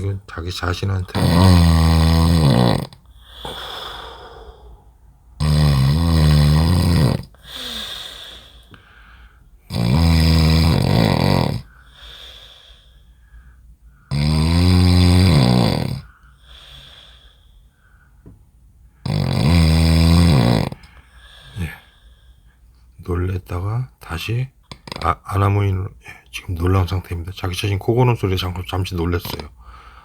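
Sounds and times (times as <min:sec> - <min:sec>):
man snoring loudly: 0:01.1 - 0:04.8, 0:05.4 - 0:07.8, 0:09.7 - 0:11.7, 0:14.1 - 0:16.1, 0:19.0 - 0:20.9
quiet breath: 0:03.0 - 0:05.3, 0:07.4 - 0:09.6, 0:11.6 - 0:14.1, 0:16.0 - 0:19.1, 0:20.8 - 0:23.0, 0:29.6 - 0:30.0.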